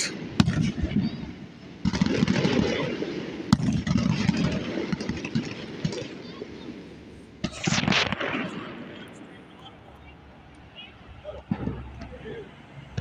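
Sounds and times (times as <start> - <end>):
fireworks burst with crackling: 0.0 - 9.7.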